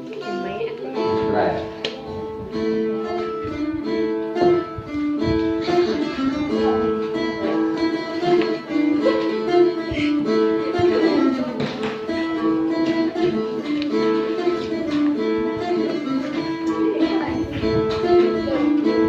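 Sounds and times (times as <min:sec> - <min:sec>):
plucked lute melody: 0:00.0 - 0:19.0.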